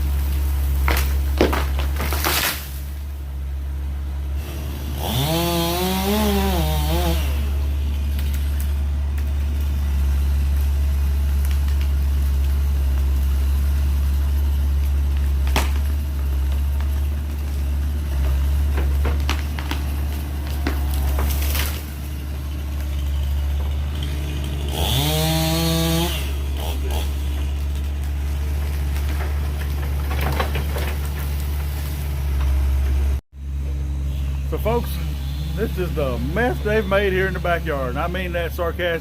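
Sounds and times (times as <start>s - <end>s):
diesel machinery rumbling: 0.0s - 39.0s
sharp crack: 0.3s - 3.0s, 14.8s - 17.6s, 18.6s - 32.0s
chainsaw revving: 4.3s - 32.0s, 34.5s - 39.0s.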